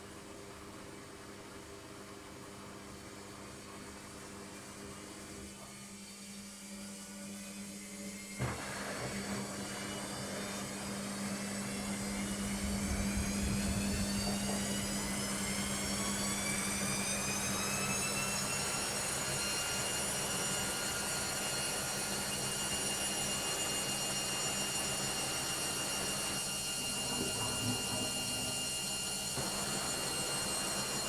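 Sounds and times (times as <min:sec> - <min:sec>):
washing machine spin whine: 0:00.0 - 0:31.0.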